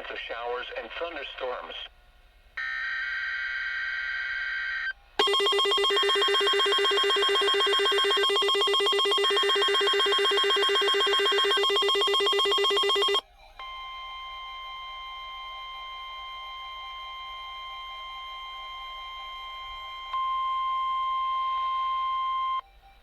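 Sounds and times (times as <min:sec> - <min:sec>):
single-pitch warning alarm tone: 0:02.6 - 0:23.0
loud ringing trill alert: 0:05.2 - 0:13.2
warbling data tone: 0:05.2 - 0:13.2.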